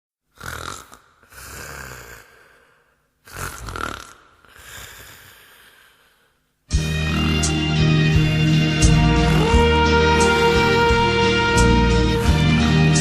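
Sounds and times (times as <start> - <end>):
person snoring loudly: 0.3 - 5.9, 6.8 - 13.0
music: 6.7 - 13.0.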